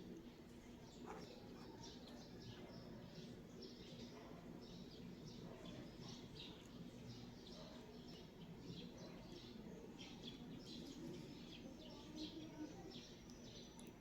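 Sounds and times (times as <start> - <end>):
faint bird chirping: 0.0 - 14.0.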